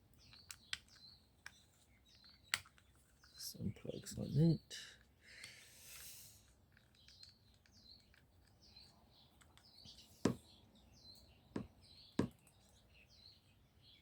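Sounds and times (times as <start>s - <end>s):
small birds chirping: 0.0s - 14.0s.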